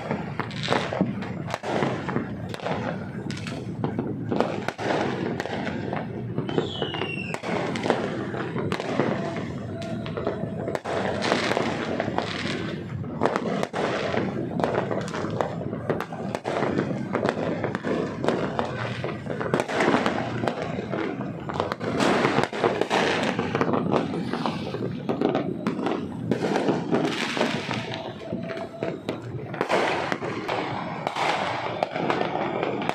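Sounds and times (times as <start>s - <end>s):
fireworks bangs and crackles: 0.0s - 32.9s
faint voices: 27.0s - 32.6s.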